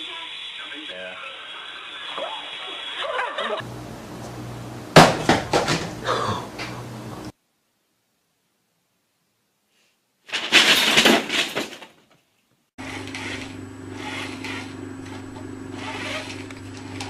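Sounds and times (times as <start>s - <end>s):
steady low hum: 3.6s - 7.3s.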